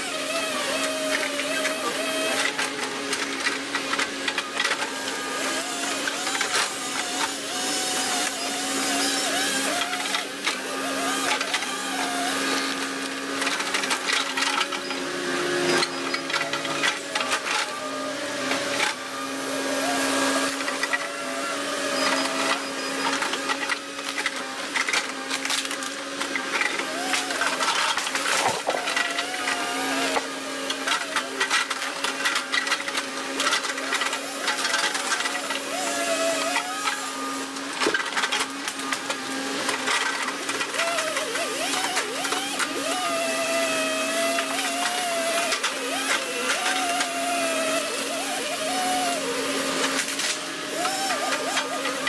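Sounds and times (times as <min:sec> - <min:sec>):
excavator engine and hydraulic whine: 0:00.0 - 0:52.0.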